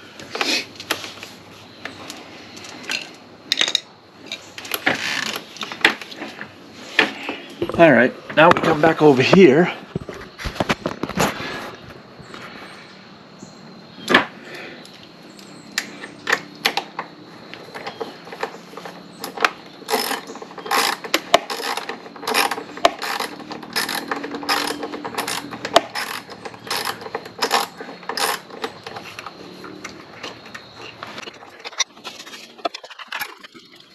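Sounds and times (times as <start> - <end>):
hand tools clicking on motorcycle: 15.4 - 31.0.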